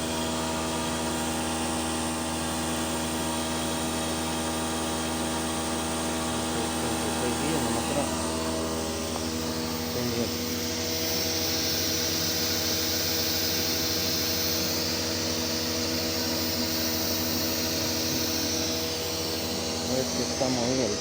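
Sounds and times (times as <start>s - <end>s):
cnc machine motor hum and whine: 0.0s - 21.0s
hiss: 9.5s - 21.0s.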